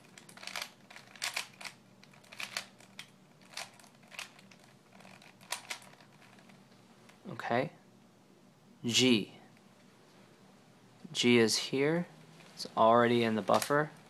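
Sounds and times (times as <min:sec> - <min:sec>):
puzzle cube plastic clicks: 0:00.0 - 0:06.5.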